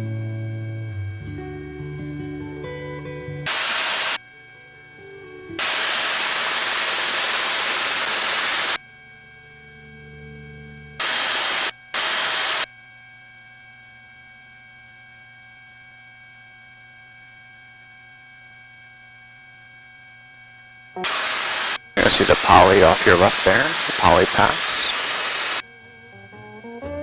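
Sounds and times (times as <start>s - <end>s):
faint steady hum with tones: 0.0s - 27.0s
intercom hiss bursts: 3.5s - 4.2s, 5.6s - 8.8s, 11.0s - 12.7s, 21.0s - 25.6s.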